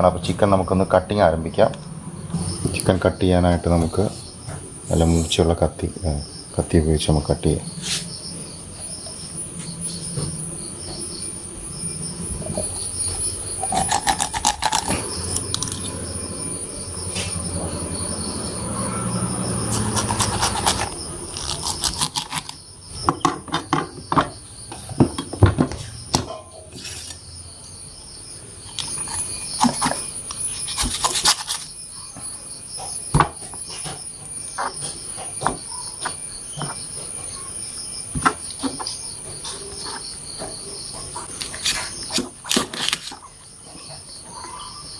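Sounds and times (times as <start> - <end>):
high-pitched insect drone: 0.0 - 42.2
handling and rustling: 38.2 - 43.3.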